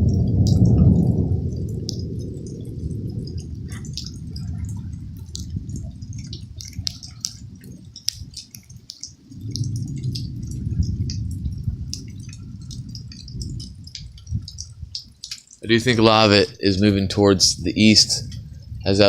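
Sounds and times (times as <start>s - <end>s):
low rumble: 0.0s - 19.0s
rain dripping and splashing: 0.0s - 19.0s.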